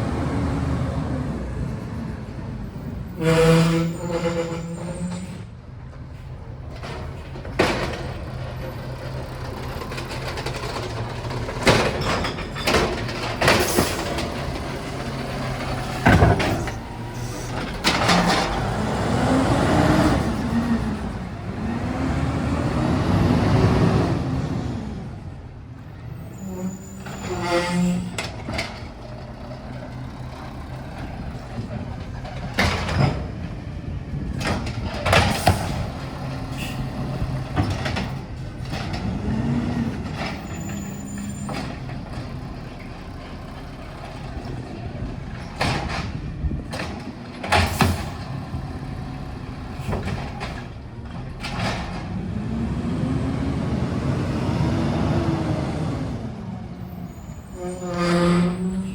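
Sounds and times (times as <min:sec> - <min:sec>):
garbage truck engine running: 0:05.4 - 0:27.2, 0:28.1 - 0:57.6
bin clunks and bangs: 0:16.0 - 0:16.8.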